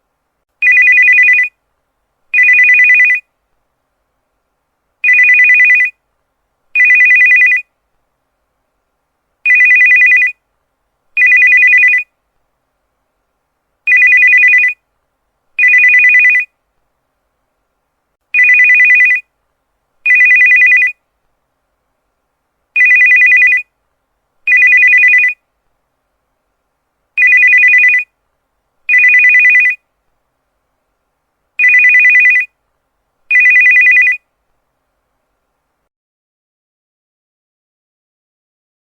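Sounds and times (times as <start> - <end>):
electronic two-tone phone ring: 0.6 - 1.5, 2.4 - 3.2, 5.0 - 5.9, 6.8 - 7.6, 9.5 - 10.4, 11.2 - 12.0, 13.9 - 14.8, 15.6 - 16.5, 18.4 - 19.2, 20.1 - 21.0, 22.8 - 23.6, 24.5 - 25.4, 27.2 - 28.1, 28.9 - 29.8, 31.6 - 32.5, 33.3 - 34.2.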